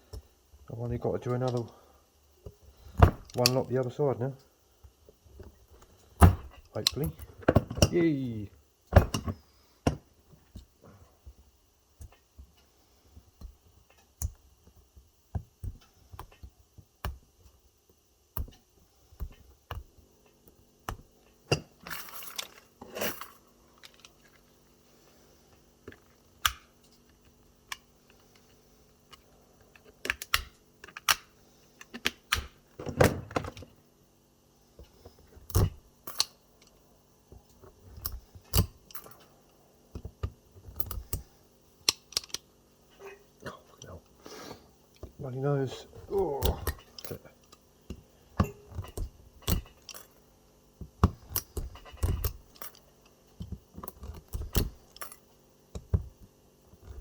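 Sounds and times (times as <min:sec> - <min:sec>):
metallic clicks and snaps: 0:03.0 - 0:03.7, 0:06.2 - 0:08.0, 0:25.9 - 0:28.5, 0:29.1 - 0:32.6, 0:35.4 - 0:36.8, 0:40.7 - 0:42.5, 0:48.4 - 0:50.2, 0:51.0 - 0:55.9.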